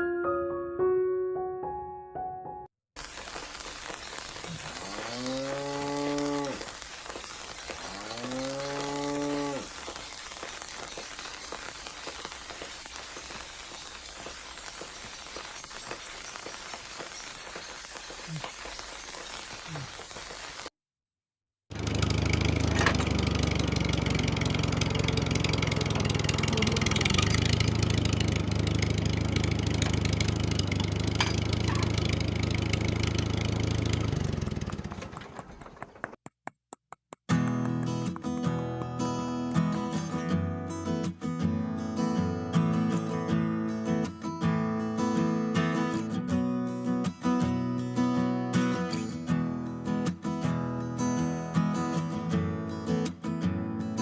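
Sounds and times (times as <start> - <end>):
rain-like hiss: 3.0 - 20.7
cow mooing: 4.7 - 6.6, 7.8 - 9.7.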